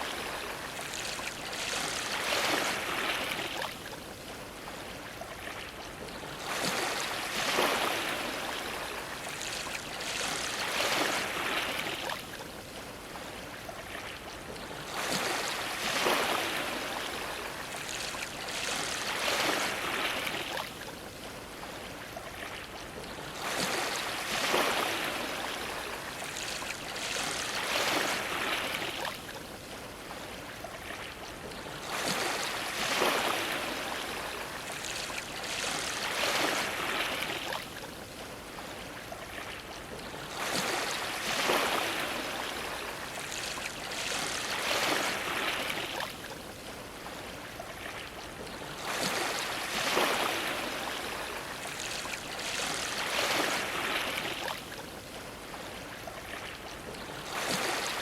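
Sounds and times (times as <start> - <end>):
waves splashing against a dock: 0.0 - 58.0.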